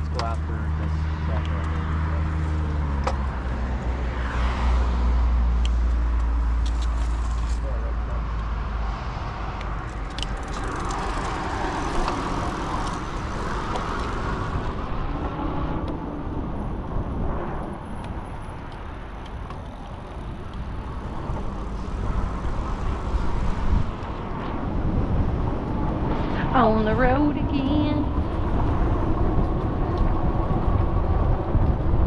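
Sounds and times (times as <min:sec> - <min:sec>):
rumble of road traffic: 0:00.0 - 0:32.0
rushing air: 0:20.8 - 0:26.7.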